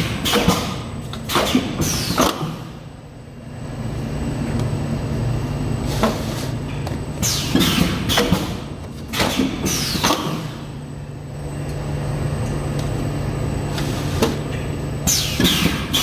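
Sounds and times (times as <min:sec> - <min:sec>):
pneumatic press clunks and hisses: 0:00.0 - 0:02.8, 0:05.9 - 0:06.6, 0:07.2 - 0:10.8, 0:13.7 - 0:16.0.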